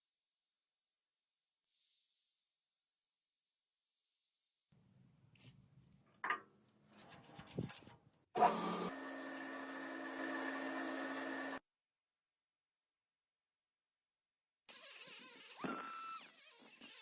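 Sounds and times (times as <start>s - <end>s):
small electric power tool running: 8.4s - 11.6s.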